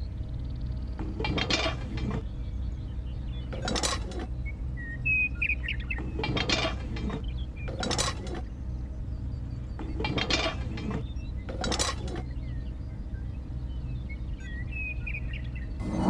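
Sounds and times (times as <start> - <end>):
birds chirping: 0.0 - 16.0
low engine drone: 0.0 - 16.0
metallic clinking and scraping: 3.5 - 4.3, 6.2 - 8.5, 9.8 - 12.3.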